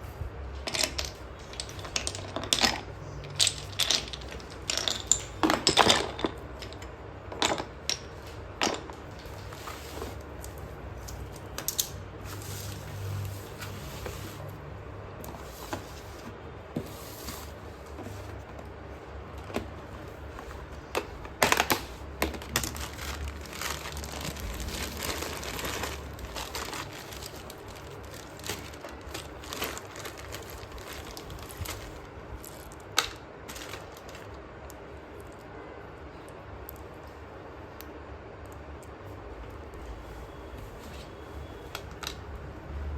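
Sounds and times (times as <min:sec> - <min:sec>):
slate pencils crunching: 0:00.6 - 0:14.0, 0:19.6 - 0:34.4.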